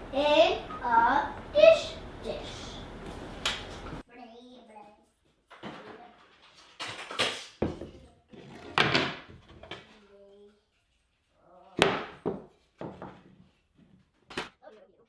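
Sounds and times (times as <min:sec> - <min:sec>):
sharp knocks and clunks: 0:11.8 - 0:13.3.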